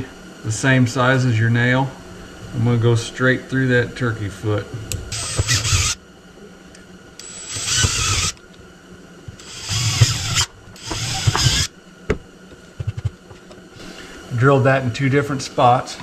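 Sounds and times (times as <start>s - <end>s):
power drill drilling: 5.1s - 6.0s, 7.2s - 8.4s, 9.4s - 11.7s.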